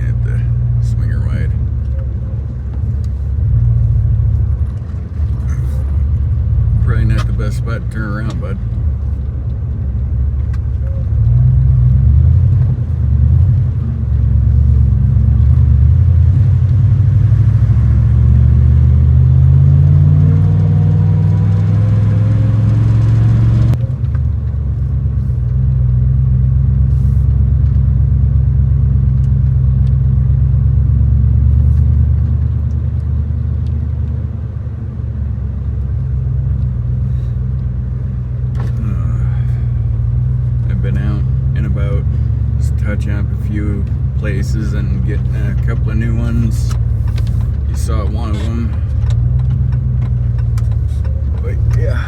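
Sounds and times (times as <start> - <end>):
pickup truck engine under load: 35.4 - 52.0.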